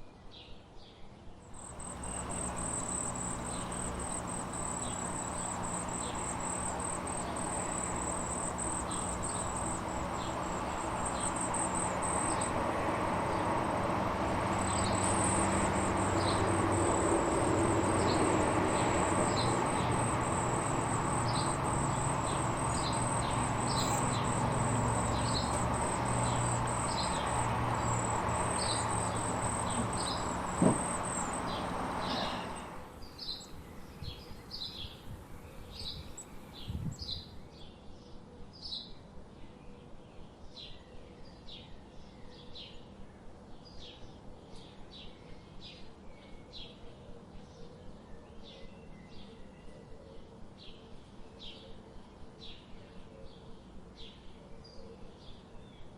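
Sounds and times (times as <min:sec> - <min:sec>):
insect trilling: 0:01.6 - 0:32.8
birds chirping: 0:01.6 - 0:36.6.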